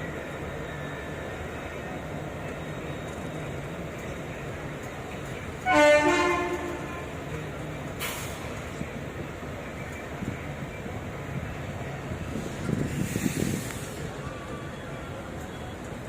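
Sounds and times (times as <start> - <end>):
train rumbling: 0.0 - 16.0
locomotive horn blast: 5.6 - 7.2.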